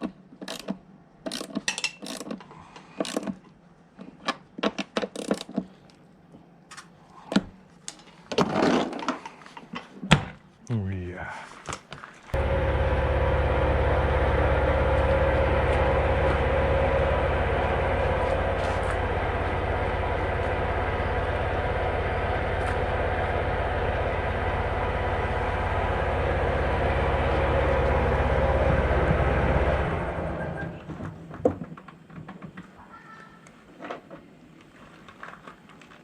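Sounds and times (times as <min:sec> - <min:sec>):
machine motor humming: 0:12.4 - 0:31.2.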